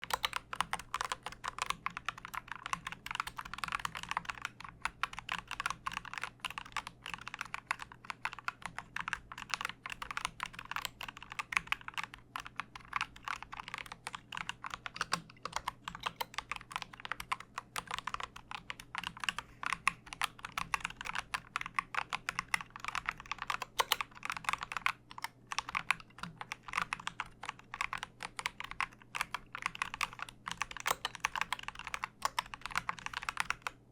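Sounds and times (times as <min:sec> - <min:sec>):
mechanical keyboard typing: 0:00.0 - 0:33.9.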